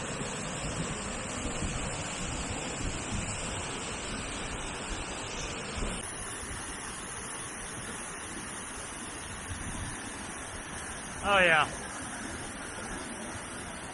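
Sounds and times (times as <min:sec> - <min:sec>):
wind buffeting microphone: 0:00.0 - 0:06.8, 0:09.1 - 0:11.2
waterfall rushing: 0:00.0 - 0:13.9.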